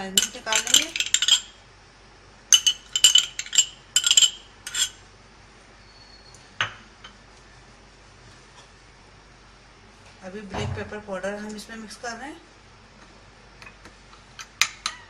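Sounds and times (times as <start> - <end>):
metal spoon clinking against bowl: 0.2 - 1.6, 2.5 - 5.0.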